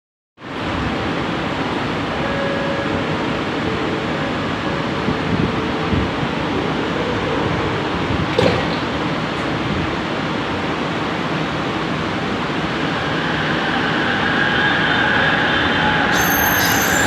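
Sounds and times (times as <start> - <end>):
metro train running hiss: 0.5 - 8.3, 9.1 - 17.0
train motor whine: 12.8 - 17.0
high-pitched tones: 16.1 - 17.0.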